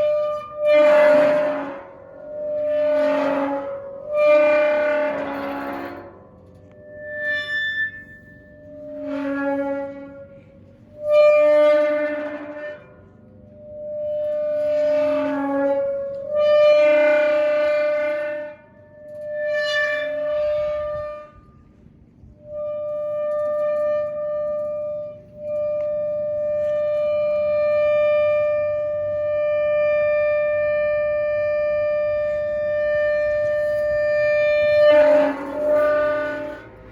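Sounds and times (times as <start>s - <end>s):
metal gate hinge squealing: 2.5s - 13.1s.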